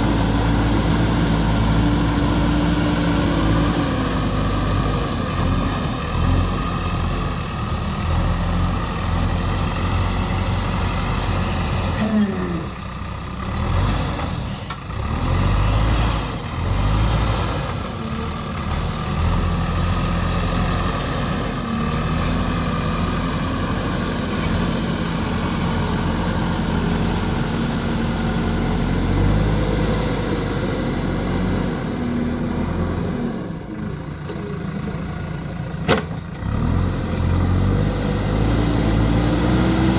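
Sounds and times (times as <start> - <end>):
diesel engine under load: 0.0 - 39.9.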